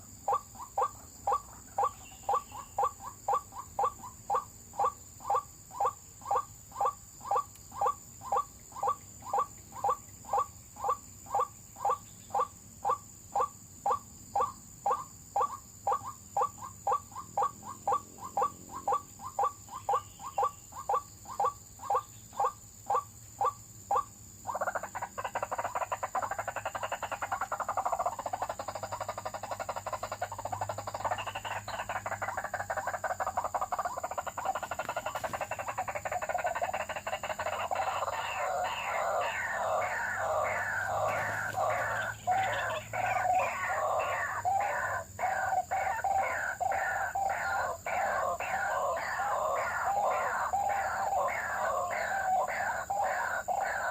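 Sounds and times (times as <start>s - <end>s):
raucous chorus of bird calls: 0.0s - 53.9s
waterhen repeated call note: 37.8s - 53.9s.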